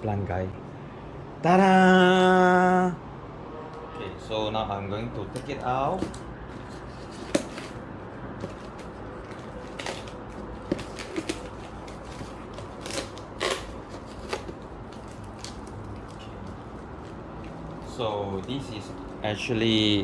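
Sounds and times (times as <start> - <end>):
packaging crinkling: 8.4 - 17.6.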